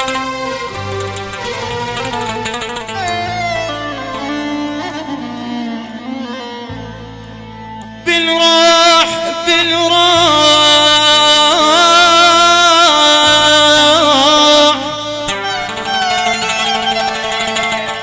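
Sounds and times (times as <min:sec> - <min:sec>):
ornamented melodic line: 0:00.0 - 0:08.0, 0:15.0 - 0:18.0.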